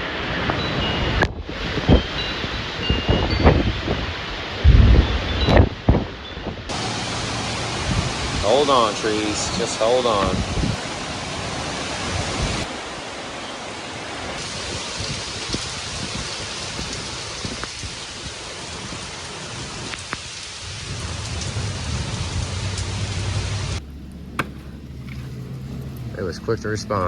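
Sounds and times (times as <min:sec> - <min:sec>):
heavy rain pouring: 0:00.0 - 0:27.0
low hum: 0:21.0 - 0:27.0.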